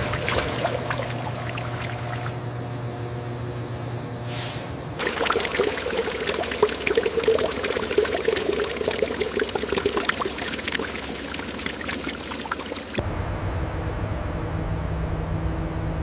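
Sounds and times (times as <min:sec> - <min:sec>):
liquid pouring: 0:05.0 - 0:13.0.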